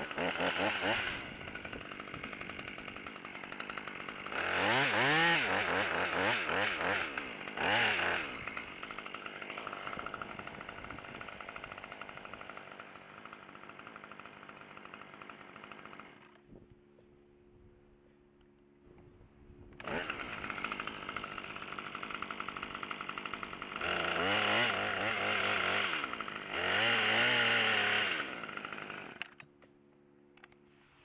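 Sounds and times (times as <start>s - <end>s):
chainsaw revving: 0.0s - 16.4s, 19.8s - 29.5s.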